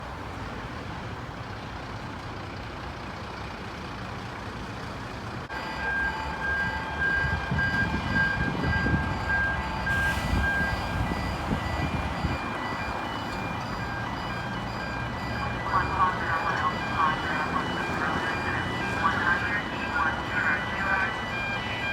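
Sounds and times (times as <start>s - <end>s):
background traffic noise: 0.0s - 21.9s
fire truck engine: 0.0s - 21.9s
electronic warning beeper: 5.5s - 21.9s.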